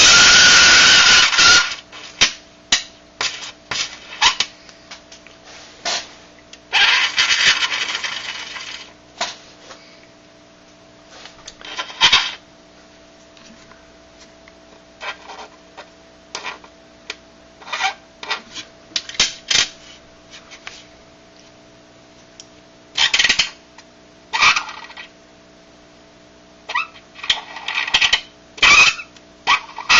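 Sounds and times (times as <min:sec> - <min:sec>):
coin squealing on dry ice: 0:00.0 - 0:01.8, 0:06.7 - 0:08.9, 0:11.7 - 0:12.4, 0:24.3 - 0:25.0, 0:26.7 - 0:29.9.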